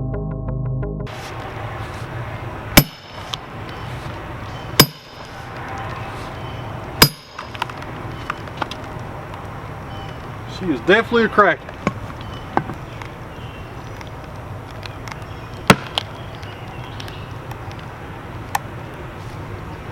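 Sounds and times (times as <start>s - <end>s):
sledgehammer striking steel wedge: 2.8s - 3.3s, 4.8s - 5.4s, 7.0s - 7.6s.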